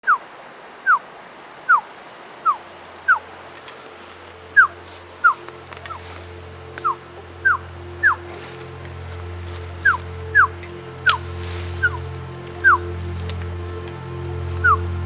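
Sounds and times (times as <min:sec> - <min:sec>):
high insect-like tone: 0:02.5 - 0:15.0
low music drone: 0:02.6 - 0:15.0.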